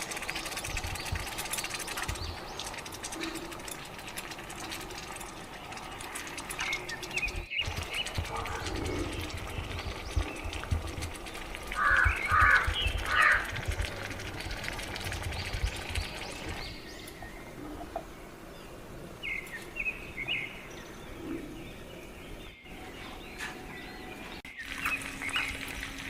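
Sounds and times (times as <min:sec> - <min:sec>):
outdoor background hum: 0:00.0 - 0:26.0
animal calling: 0:06.7 - 0:11.0, 0:11.6 - 0:14.0.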